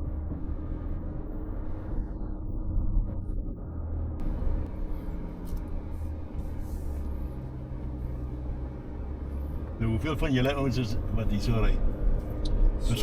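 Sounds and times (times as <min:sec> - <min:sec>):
low engine rumble in cabin: 0:00.0 - 0:13.0.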